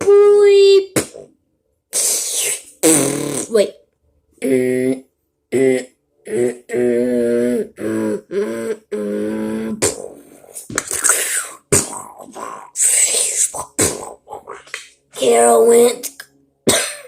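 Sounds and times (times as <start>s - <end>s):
person beatboxing: 1.0s - 1.3s, 1.9s - 3.6s, 4.5s - 15.3s.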